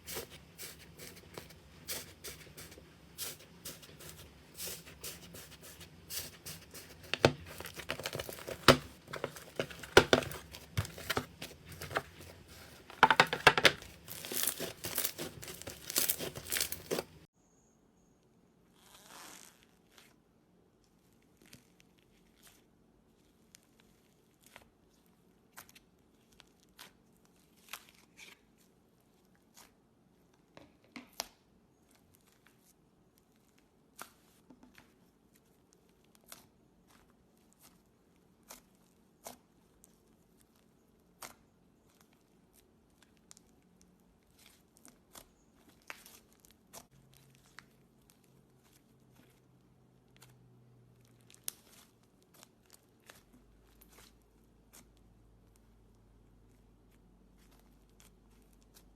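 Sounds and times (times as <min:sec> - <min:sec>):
slime popping and crackling: 0:06.2 - 0:17.2.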